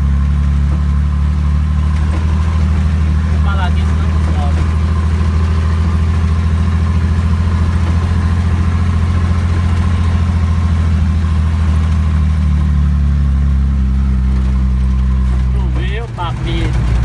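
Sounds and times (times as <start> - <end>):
diesel truck engine pulsing: 0.0 - 17.0.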